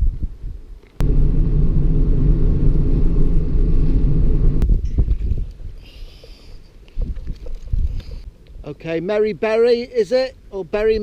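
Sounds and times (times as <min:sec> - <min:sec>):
loud low rumble: 0:01.0 - 0:04.8.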